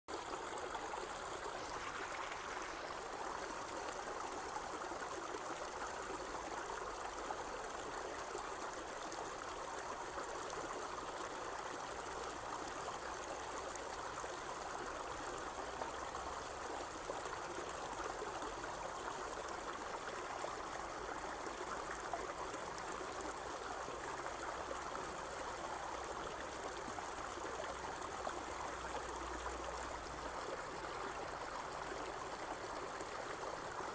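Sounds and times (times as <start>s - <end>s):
water trickling through a field: 0.1s - 33.9s.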